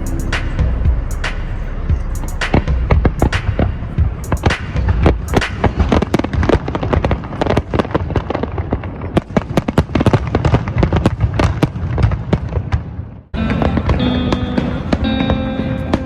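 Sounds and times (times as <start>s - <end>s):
low rumble: 0.0s - 6.6s
fireworks bangs and crackles: 2.4s - 16.0s.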